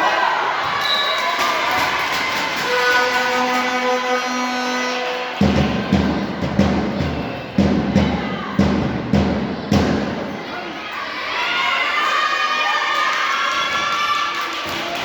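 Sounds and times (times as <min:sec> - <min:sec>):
horn holding a note: 0:02.7 - 0:05.5
bass drum beats: 0:05.4 - 0:10.3.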